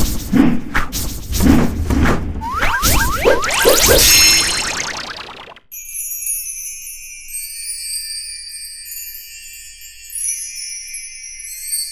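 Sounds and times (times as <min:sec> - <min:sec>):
jingling bells and chimes music: 0:06.4 - 0:11.9.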